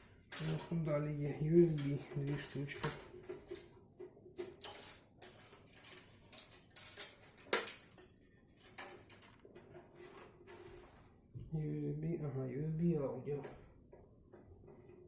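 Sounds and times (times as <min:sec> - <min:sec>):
plastic connectors clicking: 0:04.4 - 0:09.6.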